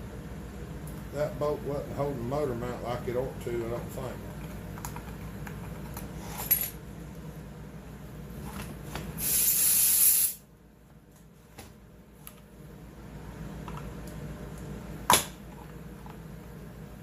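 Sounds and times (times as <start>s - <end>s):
spray hissing: 9.2s - 10.4s.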